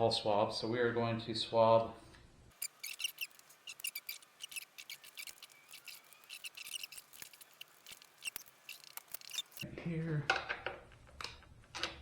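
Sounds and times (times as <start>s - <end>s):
swab rubbing scratchy strokes: 2.6s - 9.6s.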